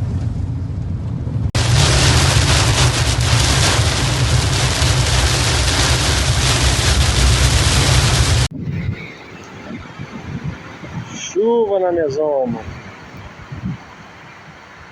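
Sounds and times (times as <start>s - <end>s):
wind buffeting microphone: 0.0s - 14.9s
heavy rain downpour: 1.6s - 8.5s.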